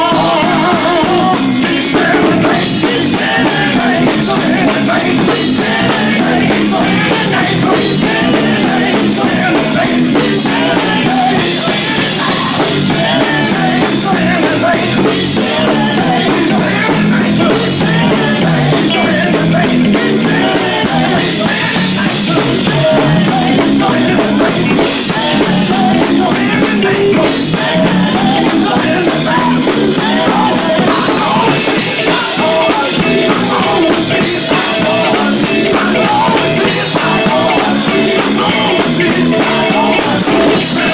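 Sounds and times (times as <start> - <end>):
drum kit and cymbals: 0.0 - 40.9
live gospel band playing: 0.0 - 40.9.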